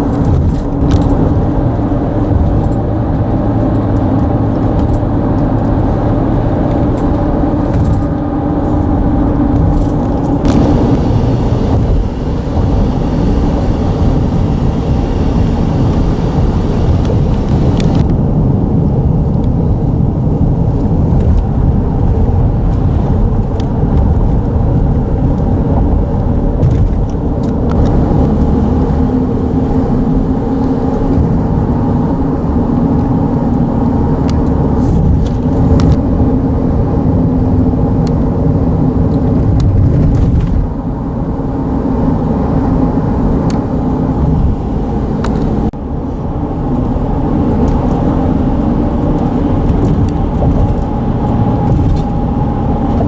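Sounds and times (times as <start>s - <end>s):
bridge rumbling under traffic: 0.0s - 53.0s
humming tone: 9.8s - 18.2s.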